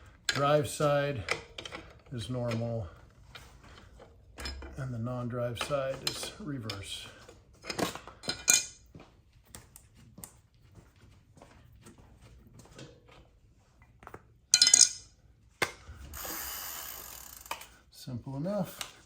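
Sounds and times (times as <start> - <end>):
metal clinks of bicycle hardware: 7.6 - 8.8, 14.5 - 15.1.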